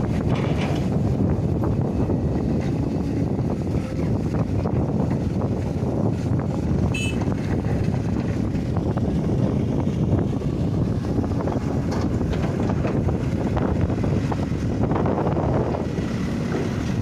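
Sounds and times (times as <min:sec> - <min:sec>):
heavy machinery rumbling: 0:00.0 - 0:17.0
wind buffeting microphone: 0:00.0 - 0:17.0.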